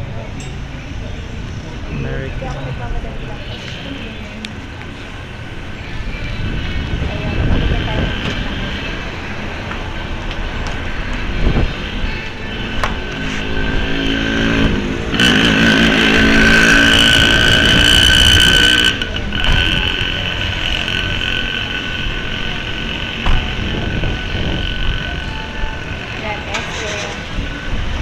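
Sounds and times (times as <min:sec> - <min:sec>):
road traffic noise: 0:00.0 - 0:28.0
engine rising in pitch: 0:11.6 - 0:26.5.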